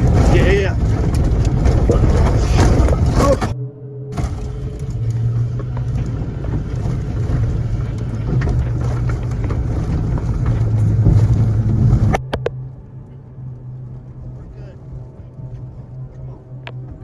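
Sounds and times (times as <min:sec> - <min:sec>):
low engine drone: 0:00.0 - 0:17.0
wind and road noise: 0:00.0 - 0:17.0.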